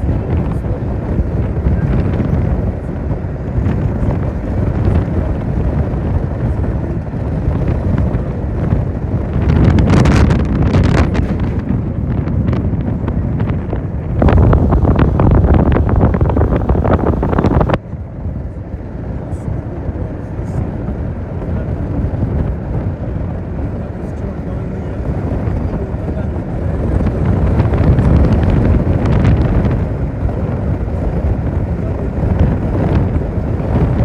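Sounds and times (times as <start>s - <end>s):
moving vehicle rumble: 0.0s - 34.0s
wind buffeting microphone: 0.0s - 34.0s.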